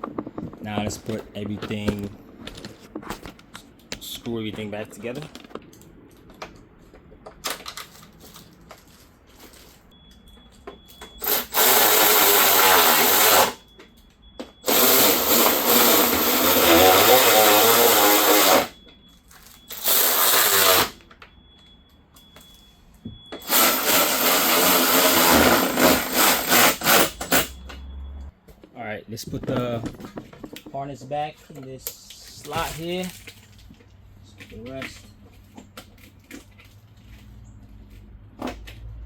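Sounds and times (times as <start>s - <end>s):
handling noises: 0.0s - 11.6s, 20.7s - 38.9s
cordless drill motor: 11.2s - 13.6s, 14.6s - 18.8s, 19.7s - 21.0s, 23.4s - 27.4s.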